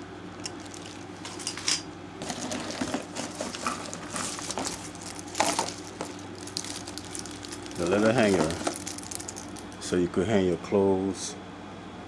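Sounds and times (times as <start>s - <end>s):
steady low hum: 0.0s - 12.0s
packaging crinkling and rustling: 0.4s - 9.8s.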